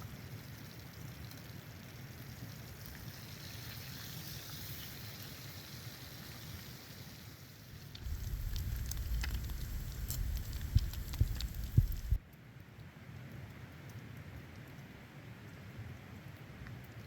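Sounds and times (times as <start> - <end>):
faint ticks: 7.9 - 12.2.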